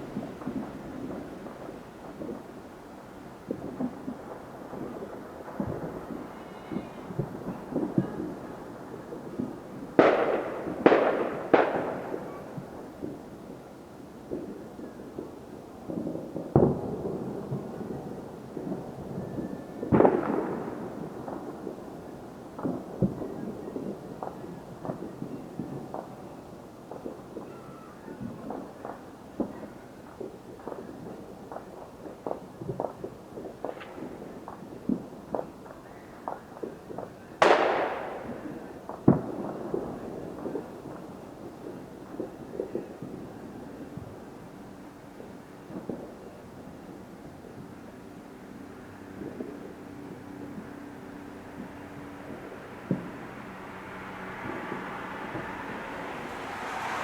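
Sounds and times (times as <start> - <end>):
loud firework booms: 0.0 - 13.6, 15.2 - 26.1, 36.2 - 44.3, 50.5 - 57.0
firecracker pops: 0.0 - 13.7, 14.3 - 44.3, 49.2 - 57.0.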